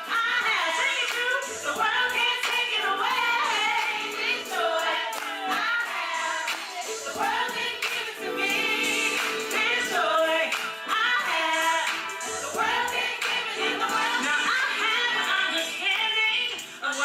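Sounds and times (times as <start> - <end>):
gospel singing voice: 0.0 - 17.0.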